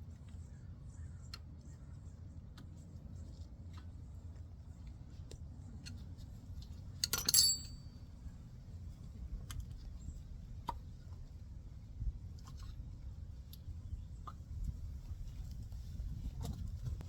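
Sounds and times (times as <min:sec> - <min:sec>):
metal parts and tools clinking: 0:07.0 - 0:07.9.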